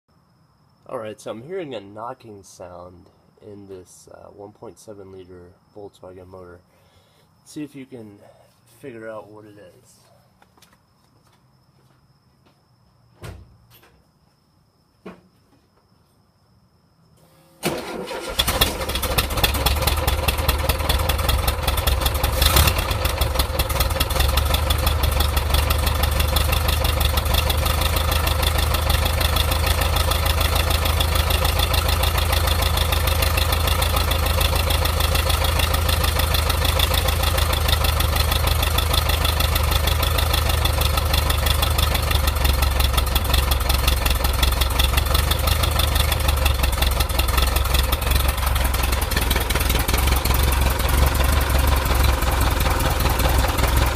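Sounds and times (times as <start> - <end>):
car engine idling with knocking: 18.5 - 53.9.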